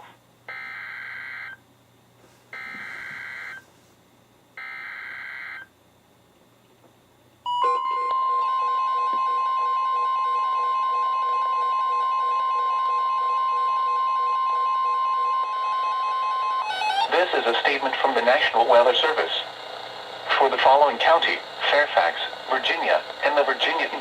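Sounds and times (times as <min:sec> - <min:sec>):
steady warning alarm tone: 0:00.5 - 0:01.6, 0:02.5 - 0:03.7, 0:04.6 - 0:05.7, 0:07.5 - 0:24.0
tones switching on and off: 0:07.5 - 0:17.1
digital data screech: 0:16.6 - 0:17.8.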